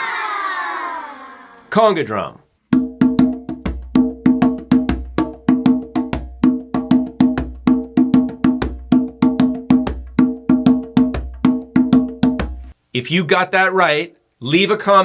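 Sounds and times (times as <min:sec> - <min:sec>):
conga drum played by hand: 0:02.7 - 0:12.8.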